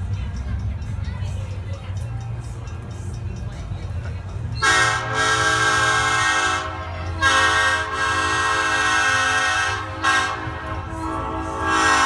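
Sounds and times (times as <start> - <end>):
locomotive air horn blasts: 4.6 - 12.0.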